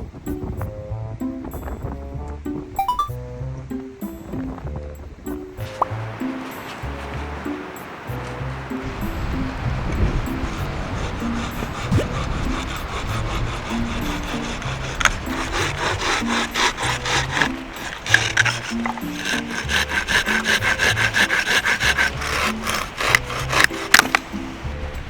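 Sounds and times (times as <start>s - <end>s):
background music: 0.0s - 25.0s
hand saw cutting wood: 5.6s - 24.5s.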